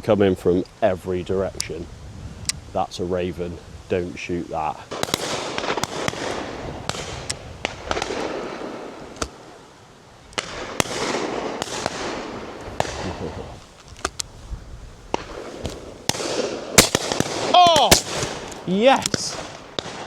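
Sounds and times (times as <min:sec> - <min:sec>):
shotgun shots with echo: 0:04.9 - 0:08.8, 0:15.2 - 0:20.0.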